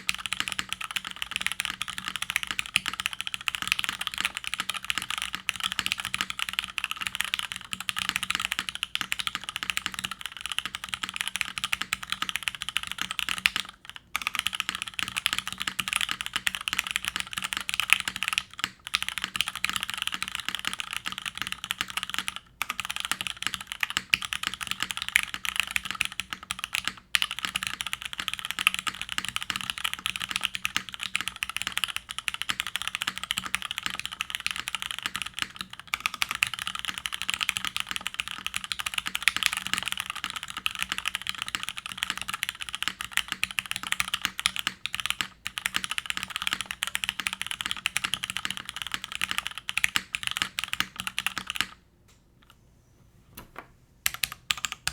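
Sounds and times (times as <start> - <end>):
mechanical keyboard typing: 0.0 - 51.8, 53.4 - 54.9.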